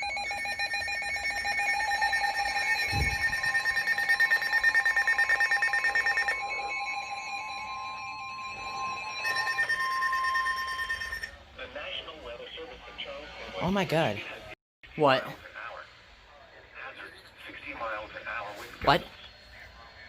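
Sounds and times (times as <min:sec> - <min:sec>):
fast electronic beeping: 0:00.0 - 0:11.3
steady warning tone: 0:00.0 - 0:11.4
weather alert radio alarms: 0:00.0 - 0:11.4.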